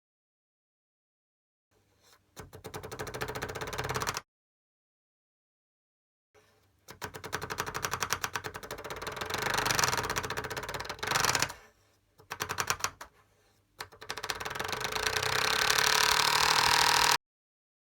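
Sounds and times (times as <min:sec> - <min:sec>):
rapid rattling clicks: 0:06.9 - 0:11.6, 0:12.2 - 0:13.1, 0:13.8 - 0:17.2.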